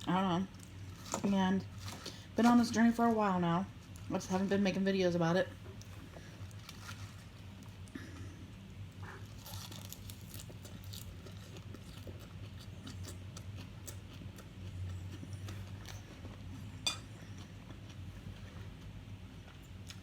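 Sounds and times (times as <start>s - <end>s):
low steady hum: 0.0s - 20.0s
cutlery clinking on dishes: 16.8s - 17.1s.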